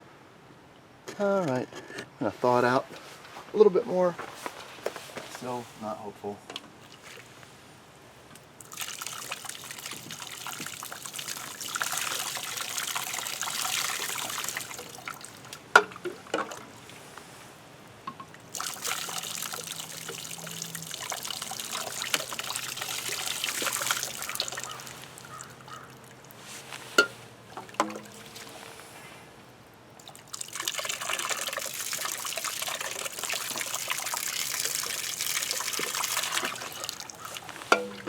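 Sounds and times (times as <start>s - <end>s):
hot water pouring into drain: 8.6s - 17.0s, 18.4s - 26.4s, 30.0s - 38.0s.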